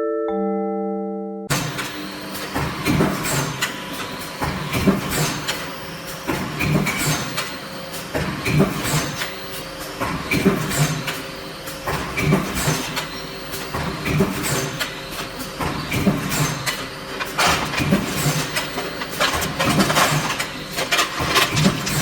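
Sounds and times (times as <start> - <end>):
metal clanking and clattering: 16.0 - 22.0.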